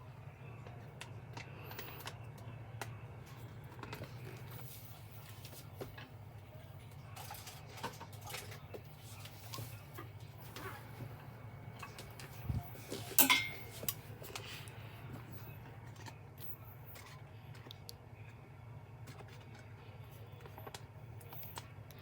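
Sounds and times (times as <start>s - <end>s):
sharp clink: 13.2s - 13.7s.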